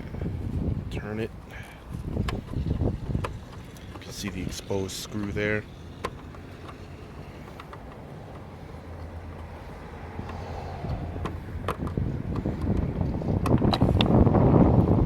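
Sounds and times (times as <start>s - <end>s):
wind rumble on microphone: 0.0s - 15.0s
light clicks of screw and trim: 6.0s - 9.6s.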